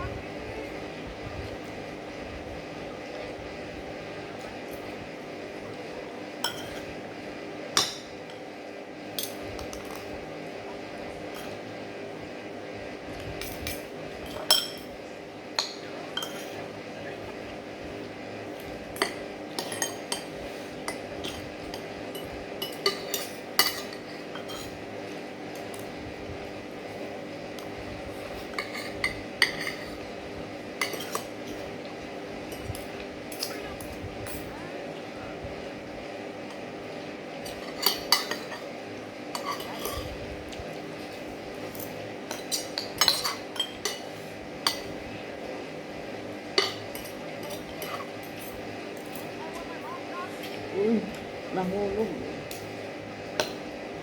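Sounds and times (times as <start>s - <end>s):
steady low hum: 0.0s - 54.0s
cutlery clinking on a plate: 6.4s - 6.9s, 13.4s - 15.0s, 15.6s - 16.6s, 19.0s - 20.3s, 20.9s - 24.8s, 28.4s - 30.0s, 30.8s - 31.4s, 37.4s - 38.7s, 39.3s - 40.2s, 41.7s - 44.9s, 46.6s - 49.2s.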